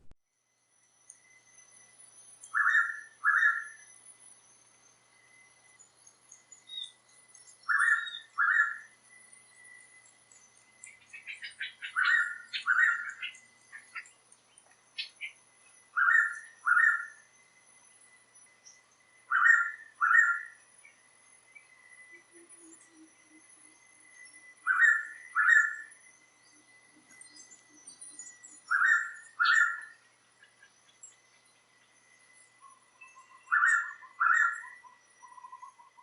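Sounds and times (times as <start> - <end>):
steady high whine: 0.0 - 36.0
faint bird chirps: 0.3 - 36.0
bird double-note whistle calls: 2.4 - 4.0, 6.6 - 9.0, 10.8 - 14.1, 15.0 - 17.3, 18.6 - 21.0, 24.2 - 26.0, 27.3 - 30.8, 32.6 - 36.0.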